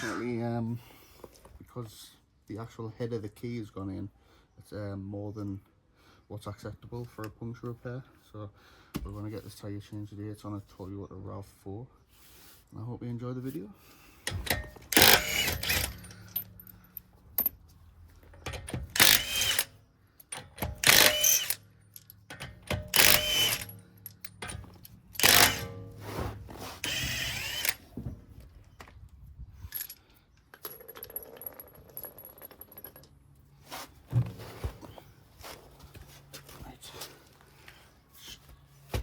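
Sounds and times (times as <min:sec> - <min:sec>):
cordless impact wrench bursts: 0:14.3 - 0:16.4, 0:18.5 - 0:21.7, 0:22.3 - 0:25.9, 0:26.8 - 0:27.9.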